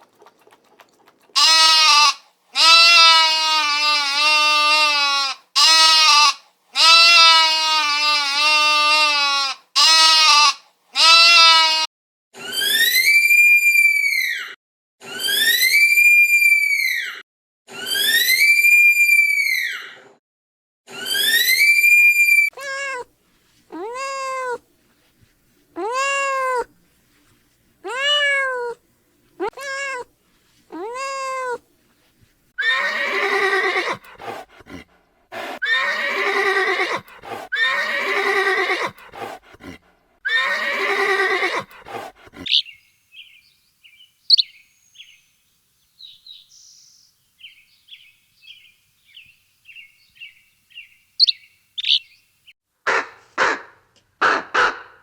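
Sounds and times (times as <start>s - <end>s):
animal calls: 0.0s - 11.8s, 20.9s - 23.1s, 23.7s - 24.6s, 25.8s - 26.8s, 27.8s - 28.8s, 29.4s - 30.1s, 30.7s - 31.6s, 32.6s - 42.8s, 44.3s - 44.5s, 51.2s - 52.2s
faint high chirps: 42.5s - 45.2s, 45.9s - 52.3s.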